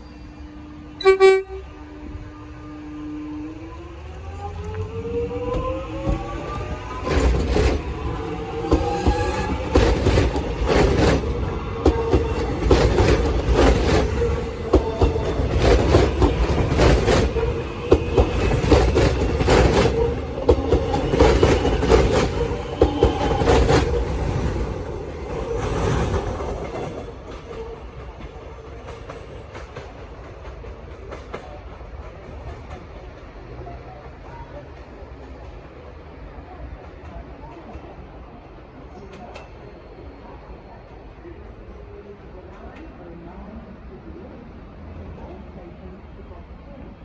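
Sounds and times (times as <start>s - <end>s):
electric train pulling away: 0.0s - 28.6s
train wheels clacking over rail joints: 5.4s - 33.6s.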